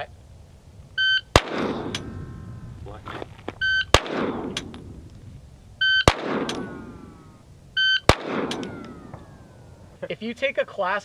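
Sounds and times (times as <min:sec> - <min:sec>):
shot timer beeps: 0:01.0 - 0:01.3, 0:03.6 - 0:03.9, 0:05.8 - 0:06.7, 0:07.8 - 0:08.6
pistol shot with echo: 0:01.3 - 0:02.2, 0:03.9 - 0:05.0, 0:06.0 - 0:07.3, 0:08.0 - 0:09.6.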